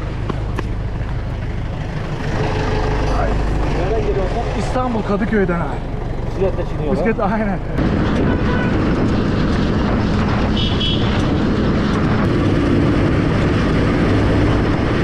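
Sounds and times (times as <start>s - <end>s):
tractor diesel engine running: 0.0s - 8.1s.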